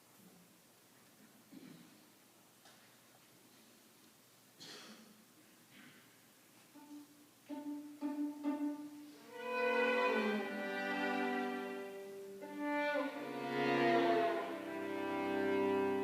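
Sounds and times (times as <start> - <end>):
string quartet playing: 6.8 - 16.0.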